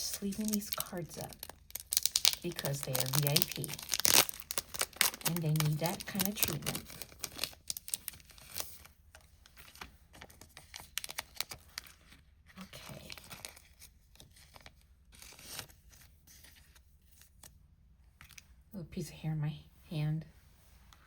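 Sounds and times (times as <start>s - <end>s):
plastic card sleeves crinkling: 0.0s - 17.6s.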